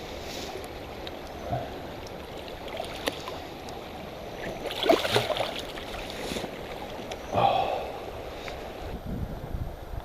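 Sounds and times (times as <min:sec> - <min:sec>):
creek water running: 0:00.0 - 0:09.0
water splashing: 0:00.7 - 0:07.2.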